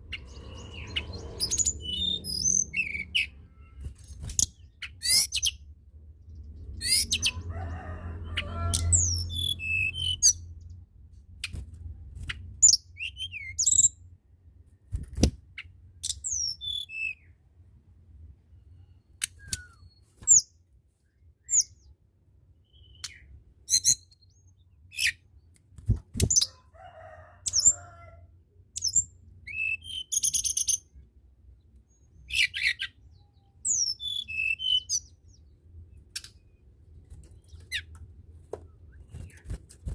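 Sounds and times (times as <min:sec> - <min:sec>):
songbird whistling: 0:29.5 - 0:30.8, 0:33.7 - 0:35.1.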